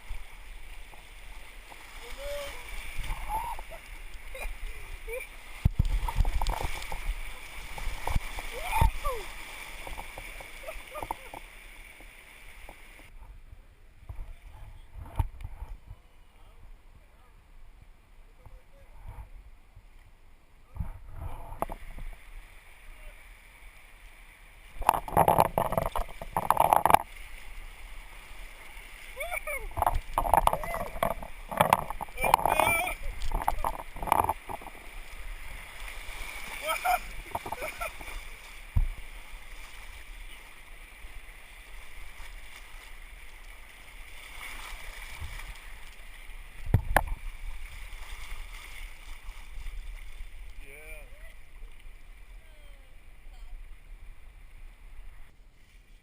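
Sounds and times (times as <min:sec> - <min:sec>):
oar splashing water: 0:00.0 - 0:13.3, 0:20.8 - 0:56.0
oar dull knocks: 0:24.8 - 0:27.0, 0:29.7 - 0:34.8.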